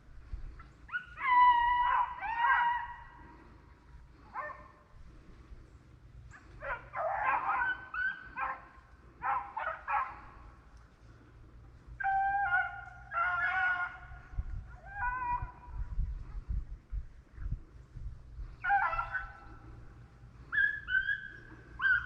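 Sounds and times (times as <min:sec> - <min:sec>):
hounds baying: 0:00.6 - 0:04.8, 0:06.2 - 0:10.7, 0:11.9 - 0:15.7, 0:18.5 - 0:22.0.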